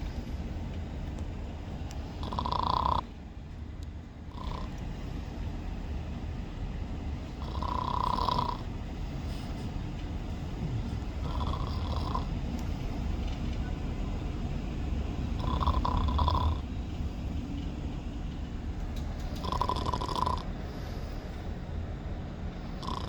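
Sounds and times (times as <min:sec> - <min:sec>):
person snoring: 0:02.2 - 0:03.0, 0:07.4 - 0:08.6, 0:11.2 - 0:12.3, 0:15.4 - 0:16.6, 0:19.4 - 0:20.5, 0:22.8 - 0:23.0.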